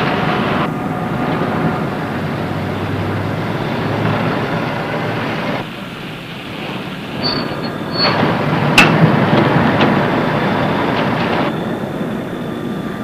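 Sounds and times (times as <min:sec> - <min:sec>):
motor vehicle rumbling: 0:00.0 - 0:13.0.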